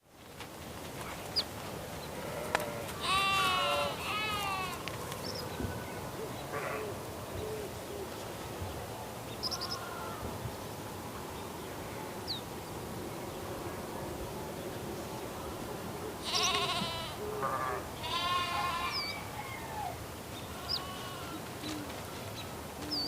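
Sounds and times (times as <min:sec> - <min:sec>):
farmyard ambience: 0:00.1 - 0:23.0
goat bleating: 0:02.2 - 0:04.8, 0:16.2 - 0:19.2, 0:20.5 - 0:21.4.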